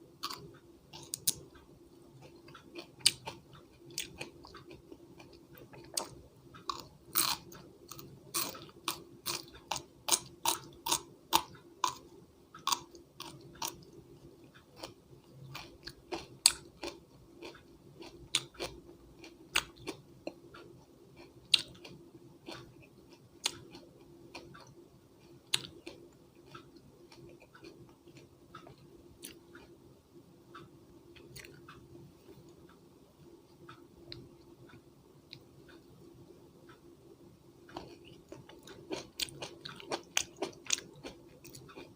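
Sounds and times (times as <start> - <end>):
chewing crisp raw vegetables: 2.2 - 13.9, 14.5 - 29.7, 31.2 - 31.7, 37.7 - 41.9.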